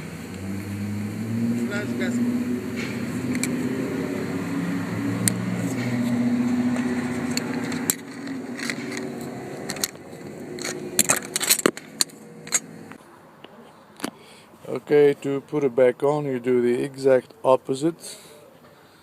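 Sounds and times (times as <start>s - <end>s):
low vehicle hum: 0.0s - 13.1s
clicks and knocks of small parts: 7.2s - 12.7s.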